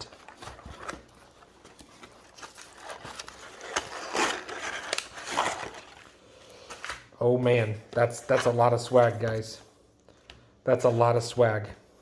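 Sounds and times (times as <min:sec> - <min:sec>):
cardboard box tearing: 0:02.1 - 0:06.0.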